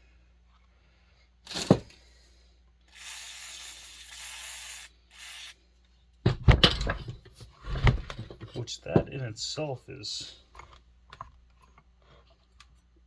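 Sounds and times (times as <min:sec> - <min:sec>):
spray hiss: 0:02.9 - 0:05.6
clatter of knocks: 0:06.3 - 0:08.6.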